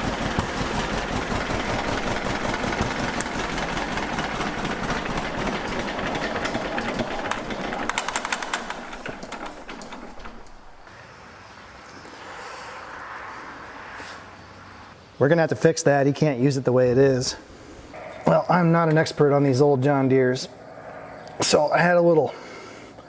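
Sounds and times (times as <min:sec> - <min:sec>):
two-cylinder engine beating: 0:00.0 - 0:10.9.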